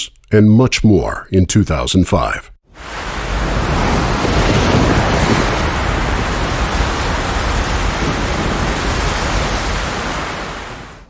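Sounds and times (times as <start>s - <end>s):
hurricane wind: 2.7s - 11.0s
surf: 2.7s - 11.0s.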